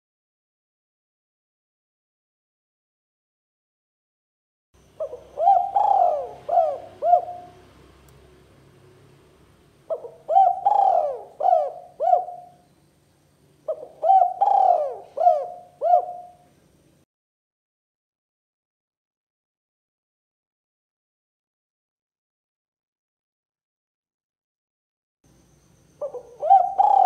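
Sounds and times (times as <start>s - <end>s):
dove cooing: 5.0s - 7.8s, 9.9s - 12.6s, 13.6s - 16.5s, 26.0s - 27.0s.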